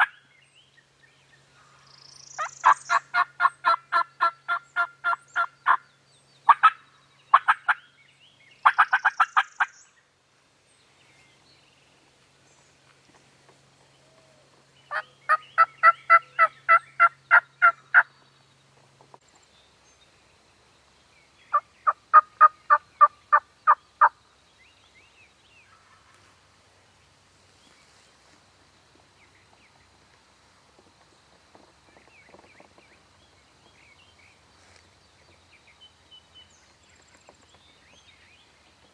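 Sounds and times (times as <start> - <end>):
faint outdoor background: 0.0 - 38.9
turkey yelping: 2.4 - 5.8, 6.5 - 7.8, 8.6 - 9.7, 14.9 - 18.1.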